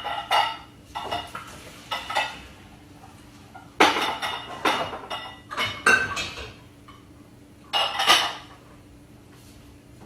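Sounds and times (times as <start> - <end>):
pots and dishes clattering: 0.0 - 2.5, 3.4 - 7.1, 7.7 - 8.7.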